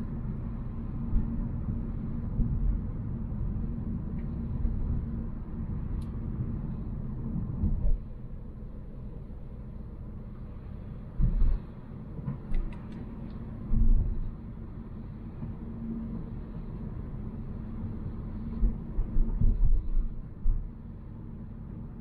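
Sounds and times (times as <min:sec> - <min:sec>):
car engine and tyres rumbling: 0:00.0 - 0:22.0.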